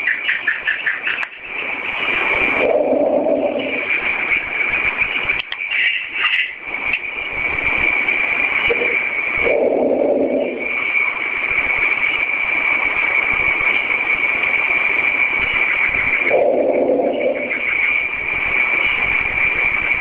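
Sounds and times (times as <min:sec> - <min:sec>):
constant high whine: 0:00.0 - 0:20.0
steady hiss: 0:00.0 - 0:20.0
low drawn-out sound: 0:02.5 - 0:04.2, 0:08.7 - 0:11.1, 0:16.2 - 0:18.3.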